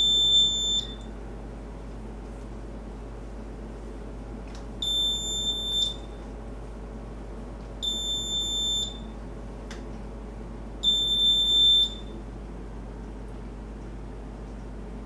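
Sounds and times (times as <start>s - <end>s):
high-pitched buzzer beeps: 0.0s - 1.0s, 4.8s - 6.1s, 7.8s - 9.1s, 10.8s - 12.1s.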